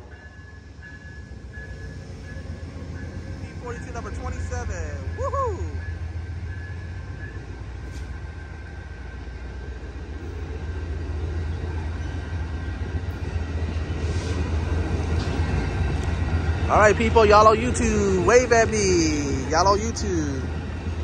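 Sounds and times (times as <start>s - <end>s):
train wheels rumbling: 0.0s - 21.0s.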